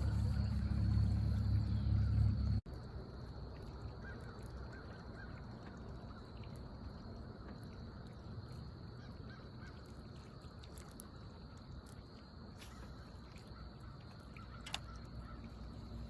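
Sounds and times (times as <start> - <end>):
electric boat motor humming: 0.0 - 2.6.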